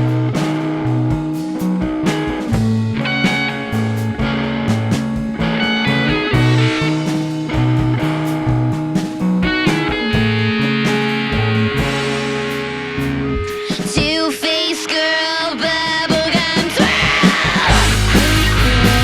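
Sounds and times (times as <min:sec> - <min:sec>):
bass line: 0:00.0 - 0:13.6, 0:16.1 - 0:19.0
drums: 0:00.0 - 0:19.0
electric guitar: 0:00.0 - 0:19.0
person singing: 0:13.5 - 0:19.0.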